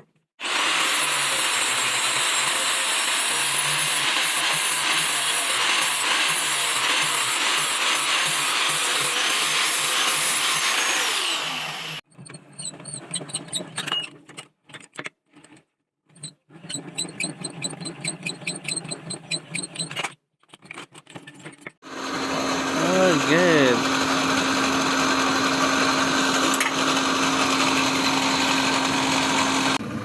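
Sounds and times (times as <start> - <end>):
power tool running: 0.4 - 12.0, 21.8 - 30.0
repeated tool strokes: 0.5 - 13.6.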